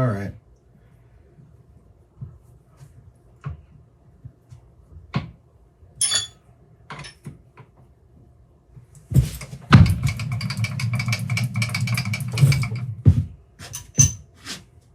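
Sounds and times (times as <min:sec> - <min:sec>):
metal tools knocking on workbench: 0:06.0 - 0:06.4
ringing metallic clink: 0:06.0 - 0:06.4.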